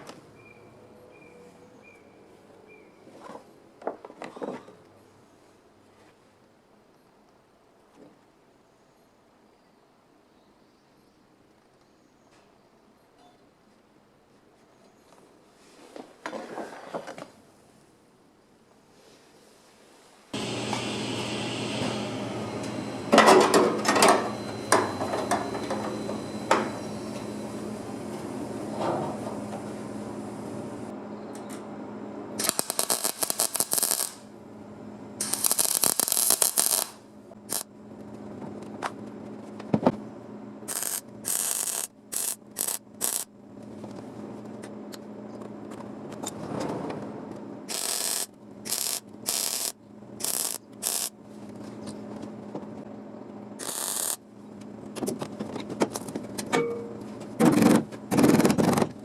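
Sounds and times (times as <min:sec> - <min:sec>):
steady low hum: 0:20.4 - 0:59.0
welder crackling hiss: 0:32.4 - 0:34.3, 0:35.2 - 0:37.7, 0:40.7 - 0:43.3, 0:47.7 - 0:51.1, 0:53.6 - 0:54.2.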